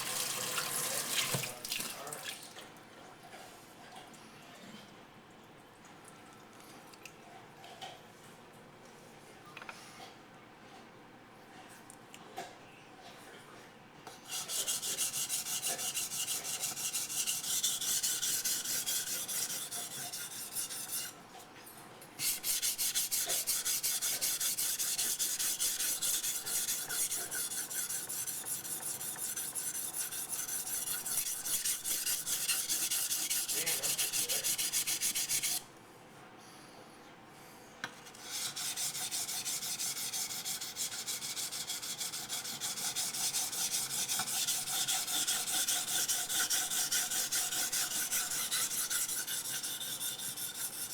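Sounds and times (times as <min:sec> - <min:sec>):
knife blade rasping on a whetstone: 0:14.3 - 0:21.2, 0:22.2 - 0:35.6, 0:38.0 - 0:50.9.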